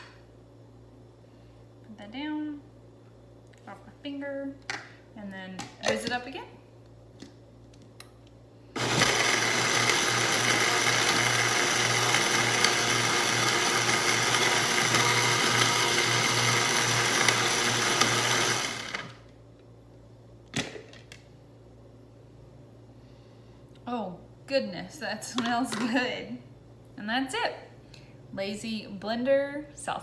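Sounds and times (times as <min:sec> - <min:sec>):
blender running: 0:08.8 - 0:19.3.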